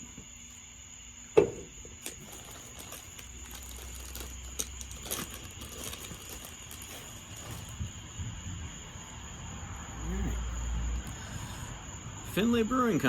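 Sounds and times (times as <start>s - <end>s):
crickets chirring: 0.0s - 13.0s
cans rustling in cardboard box: 1.9s - 8.1s.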